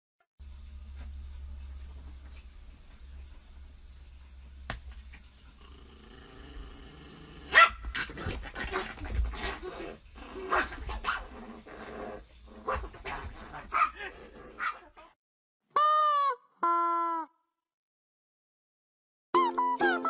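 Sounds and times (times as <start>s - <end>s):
dog growling: 5.6s - 15.1s
dog barking: 7.5s - 8.1s, 13.6s - 15.0s.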